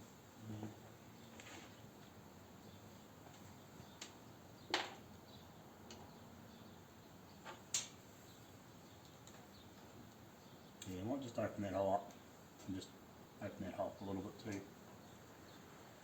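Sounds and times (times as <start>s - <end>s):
faint background hiss: 0.0s - 16.0s.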